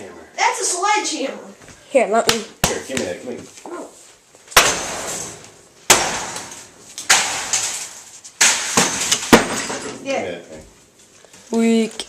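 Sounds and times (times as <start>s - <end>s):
hammer smashing television: 4.5s - 10.0s
glass and plastic shattering: 6.0s - 10.1s.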